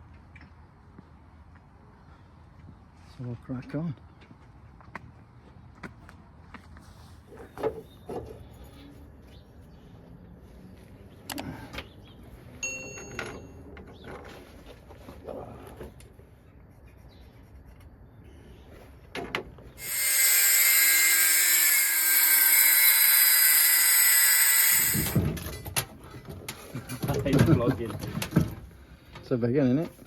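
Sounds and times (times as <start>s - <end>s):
power tool whining on steel: 19.8s - 25.8s.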